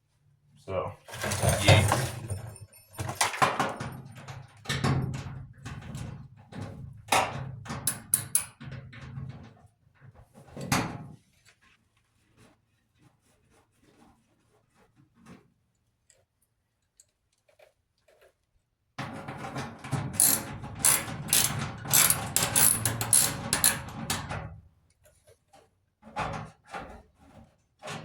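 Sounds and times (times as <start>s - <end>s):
metal parts and tools knocking: 1.1s - 4.2s, 7.8s - 8.6s, 20.0s - 24.3s.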